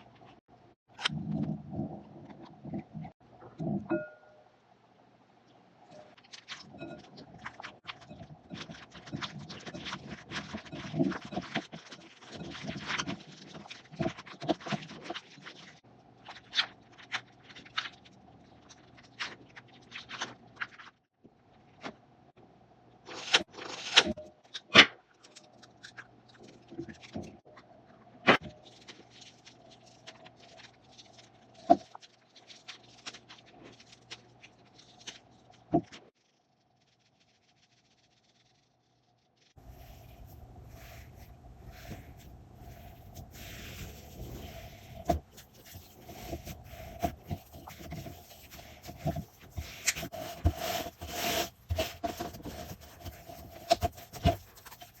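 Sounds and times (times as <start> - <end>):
short swishing rubs: 39.5 - 52.2.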